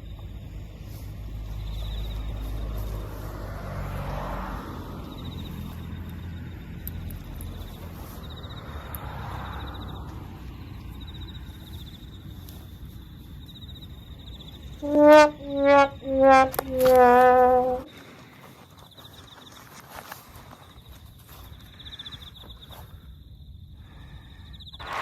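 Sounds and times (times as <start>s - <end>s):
insect trilling: 13.5s - 17.9s.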